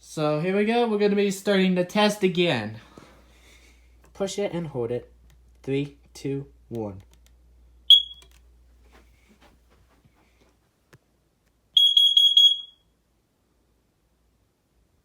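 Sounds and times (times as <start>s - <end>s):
smoke alarm beeps: 7.9s - 8.4s, 11.8s - 13.0s.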